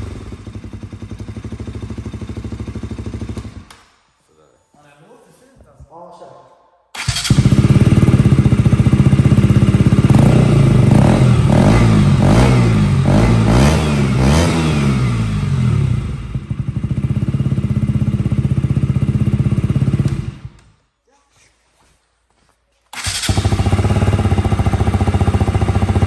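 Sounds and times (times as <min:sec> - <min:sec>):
motorcycle engine idling and revving: 0:00.0 - 0:03.7, 0:07.0 - 0:20.8, 0:23.0 - 0:26.0.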